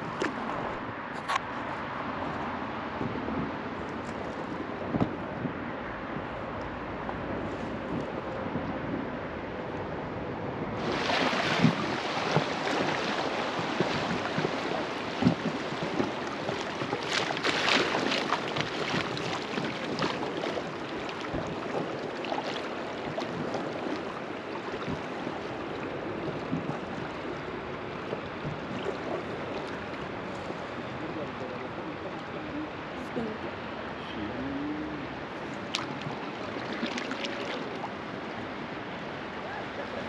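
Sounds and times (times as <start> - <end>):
river water rushing: 9.2 - 40.0
small splashes: 10.8 - 33.4, 35.4 - 38.6.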